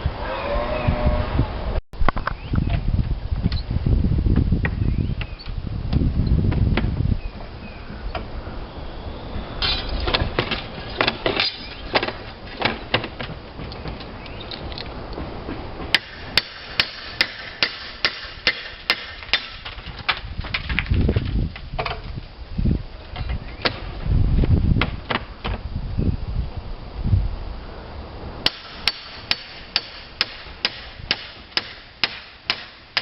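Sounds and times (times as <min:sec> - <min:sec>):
hammer striking: 0:15.9 - 0:19.8, 0:28.4 - 0:33.0.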